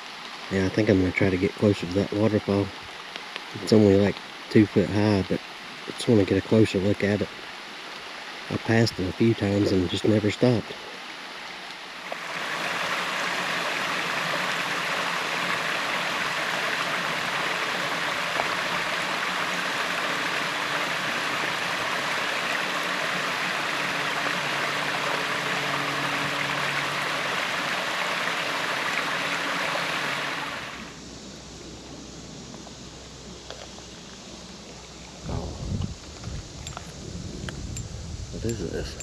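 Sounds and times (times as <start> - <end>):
water rushing over small waterfall: 0.0 - 31.0.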